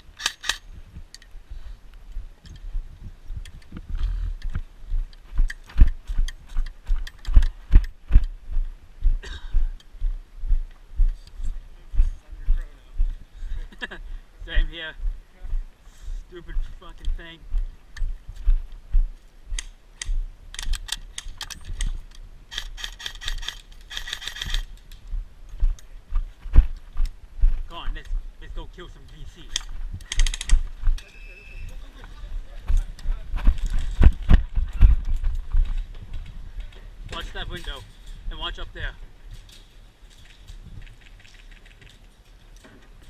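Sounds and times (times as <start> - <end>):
footsteps walking: 0.9 - 13.2, 15.0 - 20.3, 23.5 - 43.0
light clicks and rattles: 19.2 - 26.0, 39.3 - 43.0
mechanical clicking and rattling: 19.6 - 25.0, 29.1 - 30.7.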